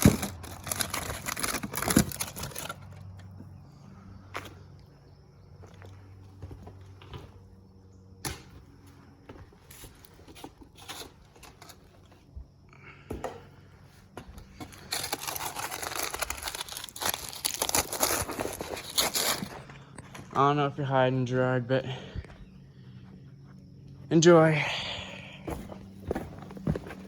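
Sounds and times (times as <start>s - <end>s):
crinkling and tearing rustle: 0.0s - 3.4s, 14.4s - 20.3s.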